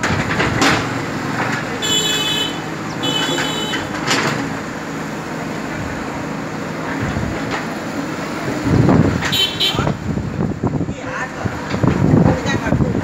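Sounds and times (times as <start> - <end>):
diesel engine running: 0.0 - 13.0.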